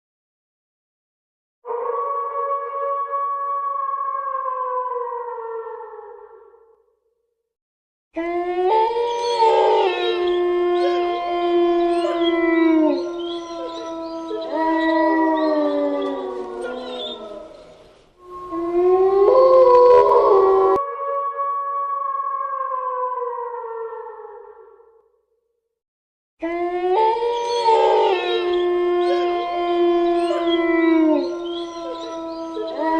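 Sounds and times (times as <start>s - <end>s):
eerie howling wail: 1.7s - 6.6s, 8.2s - 24.9s, 26.4s - 32.9s
wavering gliding cries: 8.4s - 20.8s, 26.5s - 32.9s
ghostly wailing tones: 8.9s - 21.3s.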